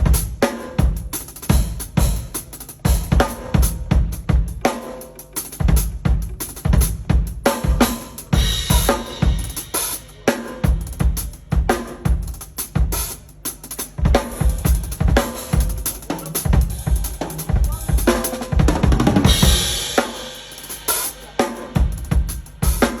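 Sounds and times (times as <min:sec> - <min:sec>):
drum kit groove: 0:00.0 - 0:23.0
cymbal crash: 0:19.2 - 0:23.0.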